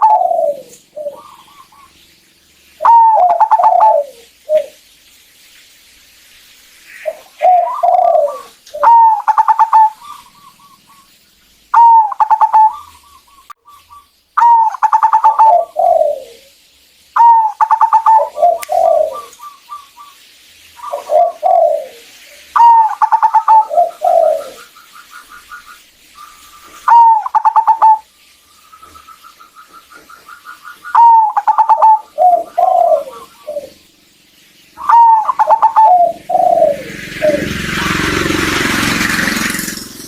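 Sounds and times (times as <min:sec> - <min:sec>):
doves cooing: 0:00.0 - 0:02.0, 0:02.8 - 0:04.8, 0:07.0 - 0:10.8, 0:11.7 - 0:13.3, 0:14.4 - 0:16.5, 0:17.2 - 0:19.8, 0:20.8 - 0:25.6, 0:26.3 - 0:28.1, 0:29.7 - 0:33.8, 0:34.8 - 0:39.7.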